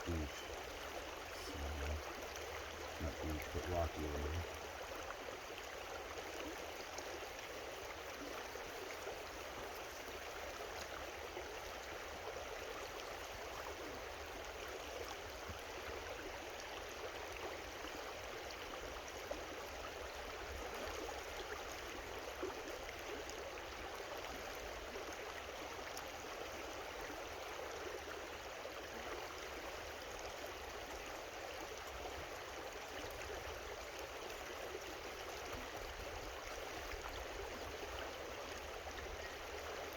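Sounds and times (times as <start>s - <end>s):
creek flowing over rocks: 0.0s - 39.9s.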